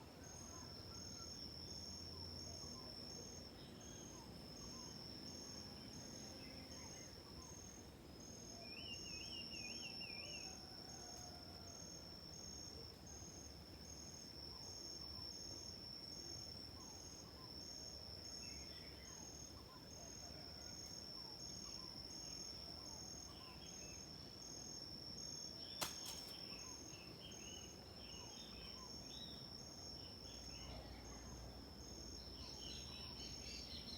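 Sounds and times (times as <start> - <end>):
insects chirring: 0.2 - 33.9.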